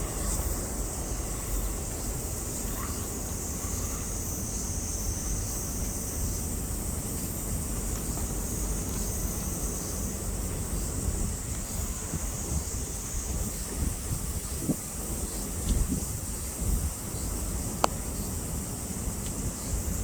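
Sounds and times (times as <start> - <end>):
steady high hiss: 0.0 - 20.0
wind buffeting microphone: 4.1 - 20.0.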